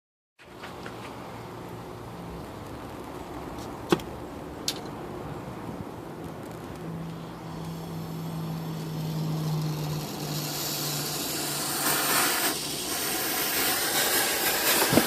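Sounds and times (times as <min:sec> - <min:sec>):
steady low hum: 0:01.3 - 0:15.0
brazing torch flame hissing: 0:07.2 - 0:15.0.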